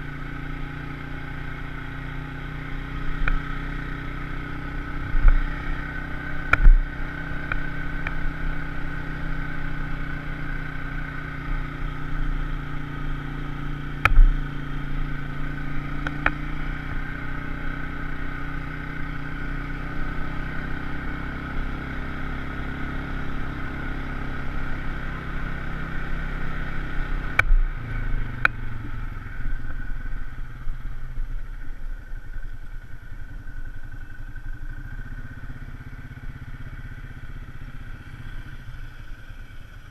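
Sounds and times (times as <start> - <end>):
vehicle engine running: 0.0 - 39.9.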